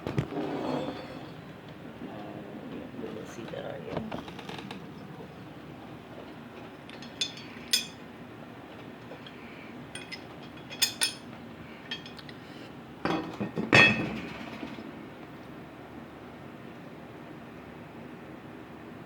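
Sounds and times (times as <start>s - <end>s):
metal clinks and knocks: 6.9s - 8.0s, 9.2s - 11.3s, 11.9s - 12.2s.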